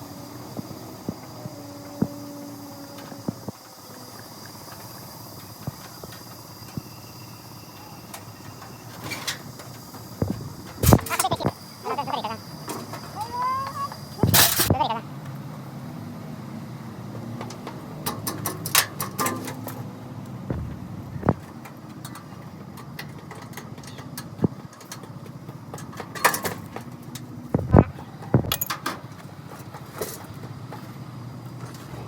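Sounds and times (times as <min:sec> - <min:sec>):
steady low hum: 0:09.8 - 0:15.1, 0:20.4 - 0:21.6, 0:27.4 - 0:28.6.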